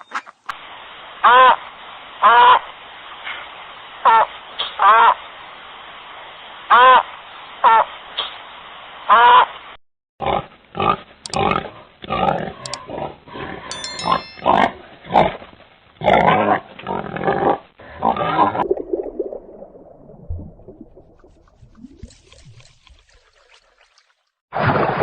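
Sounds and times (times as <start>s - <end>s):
pig oinking and grunting: 10.2s - 13.6s.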